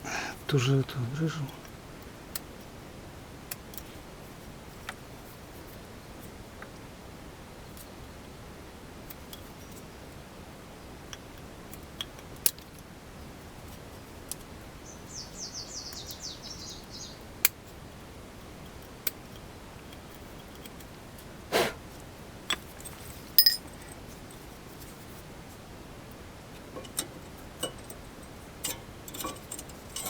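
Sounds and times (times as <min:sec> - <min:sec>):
ringing metal clink: 0:23.4 - 0:24.0.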